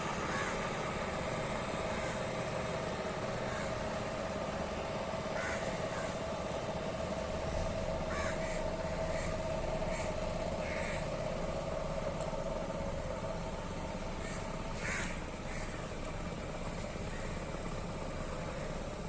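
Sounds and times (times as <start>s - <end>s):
boat engine humming: 0.0s - 19.0s
short bird calls: 8.0s - 11.1s.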